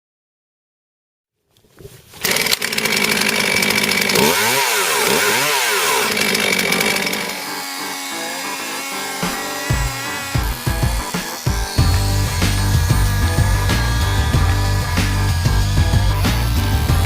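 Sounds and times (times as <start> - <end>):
chainsaw engine revving: 2.1 - 17.0.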